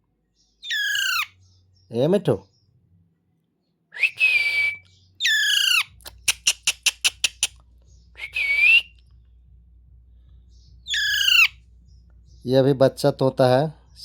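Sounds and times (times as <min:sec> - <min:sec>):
parrot squawking and whistling: 0:00.6 - 0:01.3, 0:04.0 - 0:07.5, 0:08.2 - 0:08.9, 0:10.9 - 0:11.6
sharp clicks: 0:06.0 - 0:07.6.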